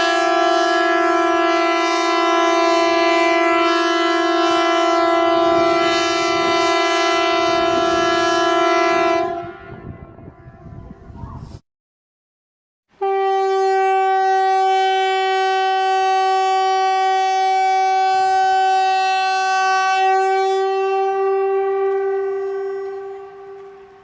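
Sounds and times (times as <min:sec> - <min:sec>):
warning siren steady tone: 0:13.1 - 0:24.0.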